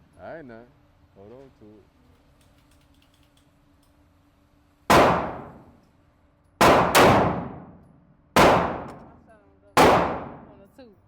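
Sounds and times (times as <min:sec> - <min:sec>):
pistol shots echoing: 0:04.9 - 0:05.7, 0:06.6 - 0:07.8, 0:08.4 - 0:09.2, 0:09.8 - 0:10.6.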